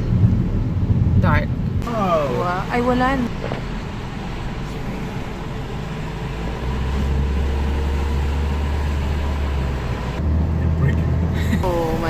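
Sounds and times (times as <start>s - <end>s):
car tyres and engine rumble: 0.0s - 12.0s
road hiss: 1.8s - 10.2s.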